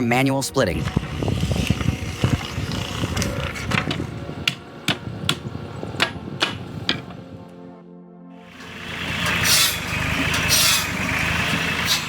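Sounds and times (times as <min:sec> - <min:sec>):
wood knocking and cracking: 0:03.2 - 0:07.2.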